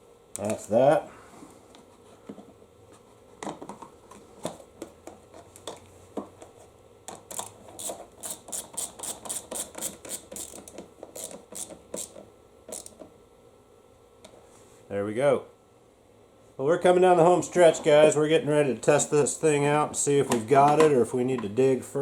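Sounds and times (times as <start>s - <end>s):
ratchet clicking: 7.4s - 13.0s.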